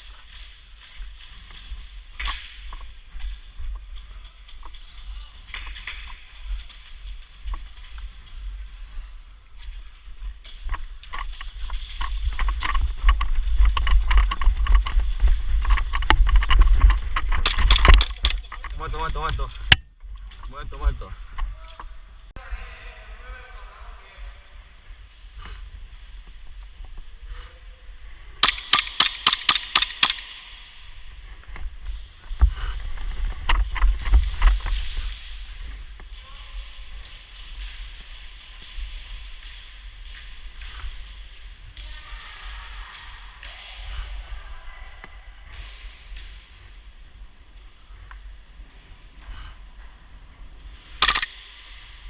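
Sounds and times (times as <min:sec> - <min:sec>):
footsteps: 0:00.0 - 0:22.4, 0:24.2 - 0:52.0
airsoft gun shots: 0:28.4 - 0:30.6, 0:51.0 - 0:51.6.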